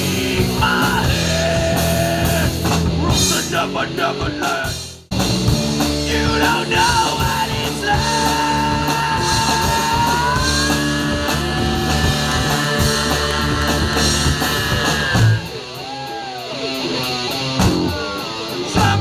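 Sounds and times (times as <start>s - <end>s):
rock band playing: 0.0s - 19.0s
bending lead guitar notes: 5.1s - 19.0s
drum hits: 7.0s - 15.4s.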